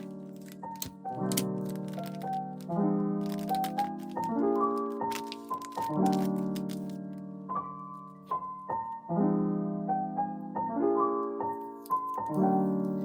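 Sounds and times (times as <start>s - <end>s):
gentle piano playing: 0.0s - 13.0s.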